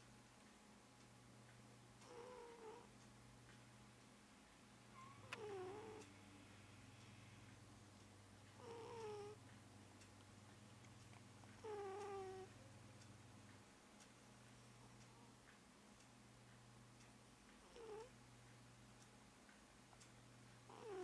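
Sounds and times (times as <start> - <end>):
cat snoring: 2.0 - 2.9, 5.0 - 6.1, 8.6 - 9.4, 11.6 - 12.5, 17.6 - 18.1, 20.7 - 21.0.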